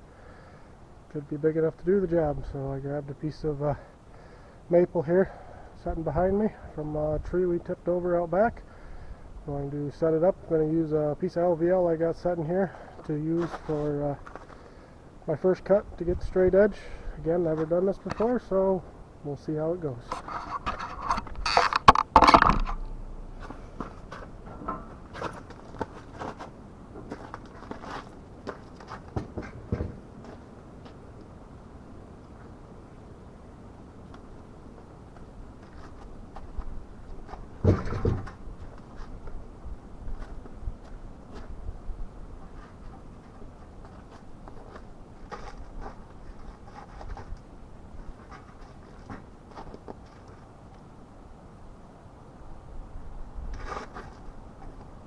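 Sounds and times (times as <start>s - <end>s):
equipment knocking and scraping: 20.1s - 27.8s, 37.3s - 38.8s
steady low rumble: 21.1s - 26.0s.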